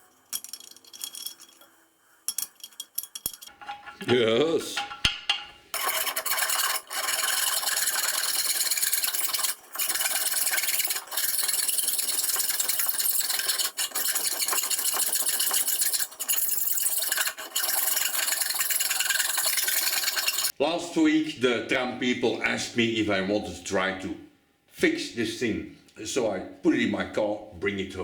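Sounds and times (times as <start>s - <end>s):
hand file rasping on metal: 5.7s - 20.5s.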